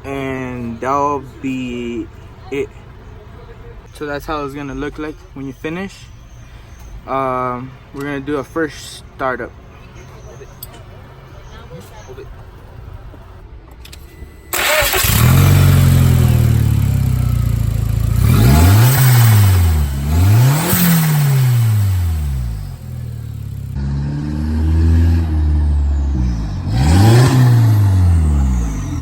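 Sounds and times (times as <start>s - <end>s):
car engine starting and idling: 0.0s - 29.0s
car engine revving: 14.6s - 29.0s.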